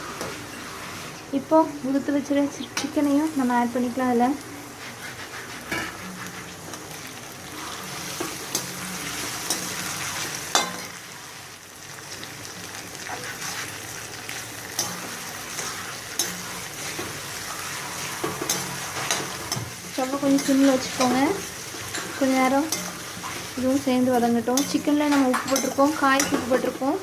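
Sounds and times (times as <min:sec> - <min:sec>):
food sizzling in a pan: 0:00.0 - 0:27.0
utensil scraping a pan: 0:04.6 - 0:10.9, 0:13.1 - 0:13.8, 0:14.8 - 0:26.9.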